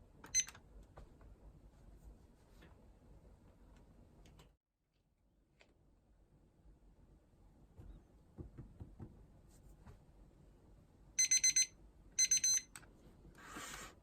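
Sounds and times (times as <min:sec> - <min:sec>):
electronic alarm beeping: 0:11.2 - 0:12.7.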